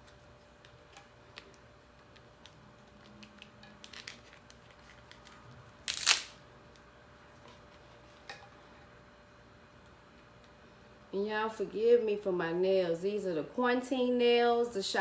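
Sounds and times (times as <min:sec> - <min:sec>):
crab shell cracking: 0:02.4 - 0:06.4.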